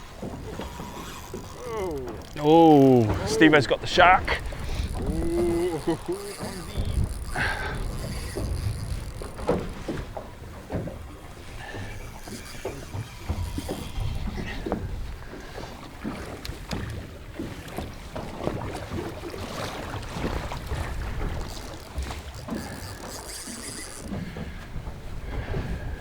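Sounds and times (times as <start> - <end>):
wind buffeting microphone: 0.0 - 15.7
water slapping boat hull: 0.0 - 26.0
gear knocking and clicking: 0.2 - 14.9, 20.2 - 24.5.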